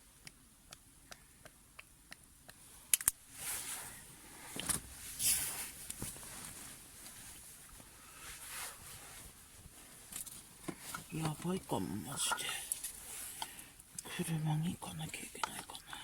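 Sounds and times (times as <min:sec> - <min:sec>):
rustling swishes: 0:03.3 - 0:11.2.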